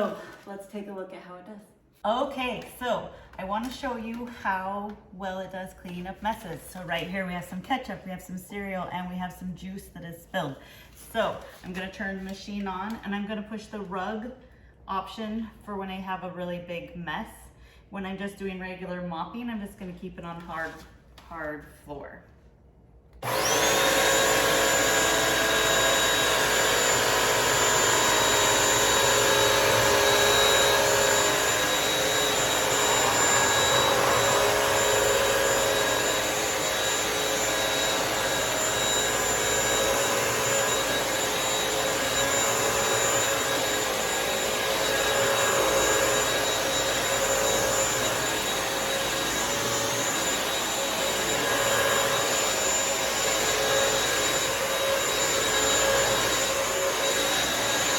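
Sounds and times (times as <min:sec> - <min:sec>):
floor cleaner motor whining: 0:23.2 - 0:57.9.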